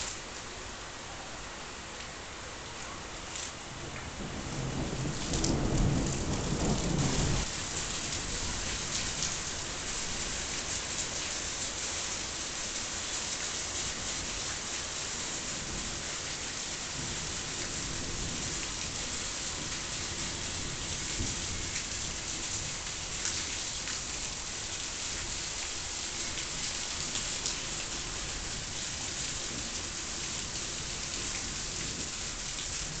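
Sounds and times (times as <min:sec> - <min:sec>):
rain falling: 0:00.0 - 0:33.0
thunder rumbling: 0:03.9 - 0:08.7.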